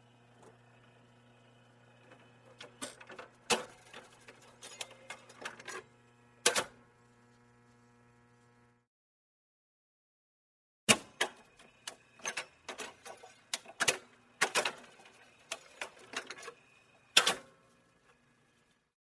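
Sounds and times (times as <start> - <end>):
jukebox mechanism clicking and clunking: 2.1 - 6.8, 10.9 - 17.6.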